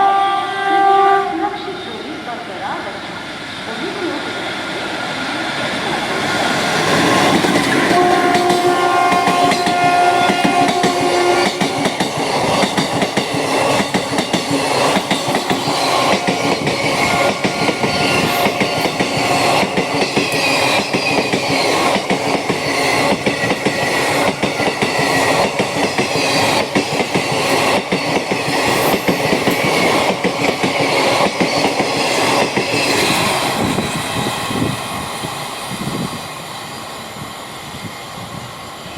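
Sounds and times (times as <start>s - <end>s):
train horn: 0.0s - 2.2s, 7.8s - 11.8s
train wheels clattering over rail joints: 6.7s - 34.3s.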